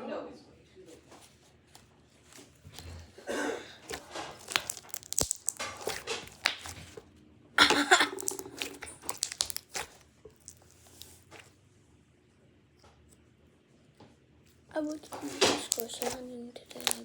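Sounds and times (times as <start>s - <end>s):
handling clicks and rustles: 3.8s - 7.0s, 14.7s - 17.0s.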